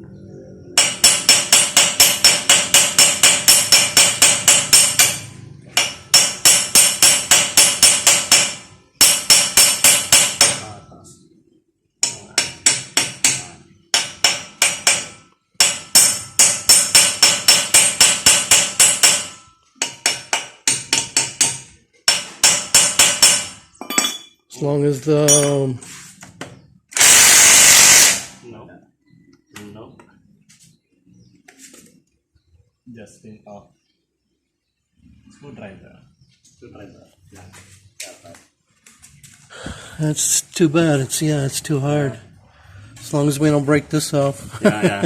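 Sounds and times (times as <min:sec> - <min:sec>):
hammer beating on metal: 0:00.8 - 0:10.8, 0:12.0 - 0:23.6, 0:25.2 - 0:25.6.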